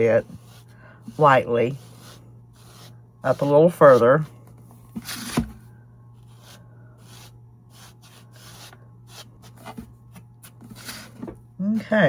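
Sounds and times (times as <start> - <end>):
soft scratchy rubbing strokes: 0.0 - 4.3.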